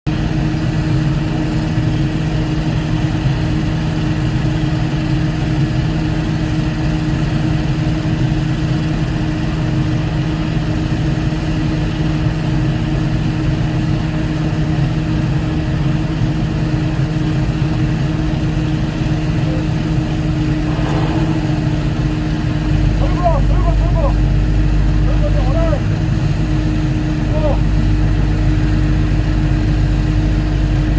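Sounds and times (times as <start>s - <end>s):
diesel engine running: 14.0s - 30.9s.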